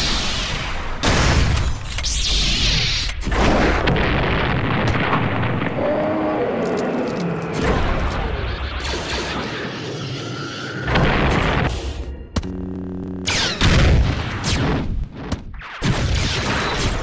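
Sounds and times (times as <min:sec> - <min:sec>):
explosion blast: 0:10.9 - 0:12.0.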